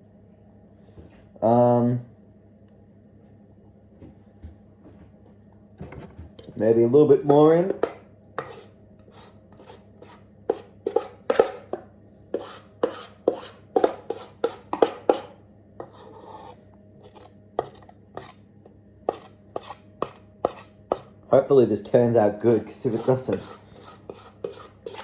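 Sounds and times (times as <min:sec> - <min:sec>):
spoon scraping: 0:07.3 - 0:11.7, 0:12.4 - 0:18.4, 0:19.1 - 0:21.1, 0:22.5 - 0:25.0.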